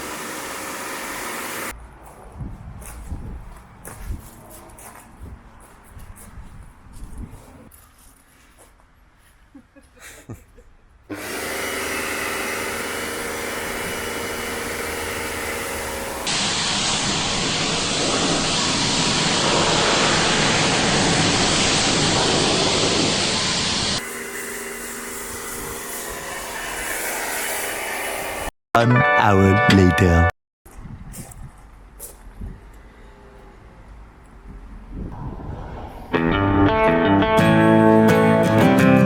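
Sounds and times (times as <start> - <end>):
machine motor hissing and humming: 0.0 - 1.7, 11.1 - 20.7, 22.1 - 28.5.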